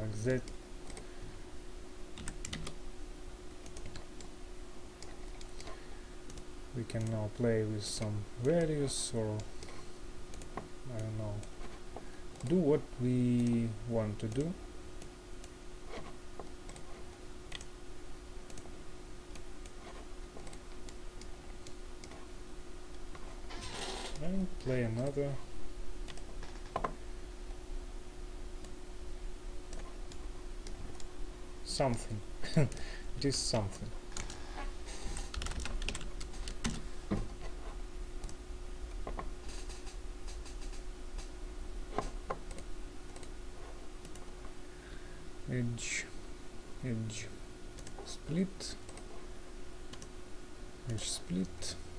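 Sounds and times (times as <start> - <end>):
steady low hum: 0.0 - 51.9
keyboard keys clicking: 2.2 - 2.8, 35.2 - 36.8.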